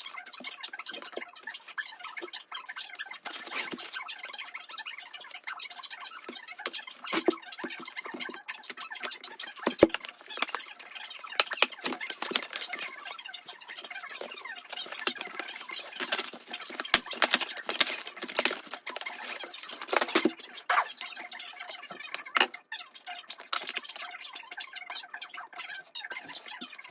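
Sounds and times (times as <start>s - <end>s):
hands handling packaging: 3.2s - 4.0s, 6.6s - 21.2s, 23.3s - 23.9s.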